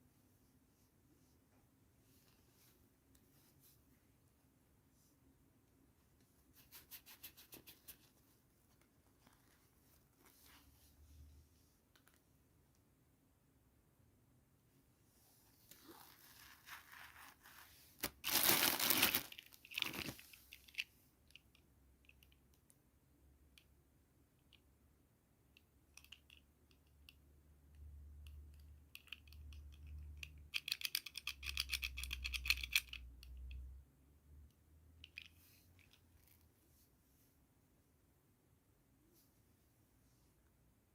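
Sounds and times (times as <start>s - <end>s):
packaging crinkling: 15.8s - 20.3s
packaging tearing: 16.0s - 20.2s.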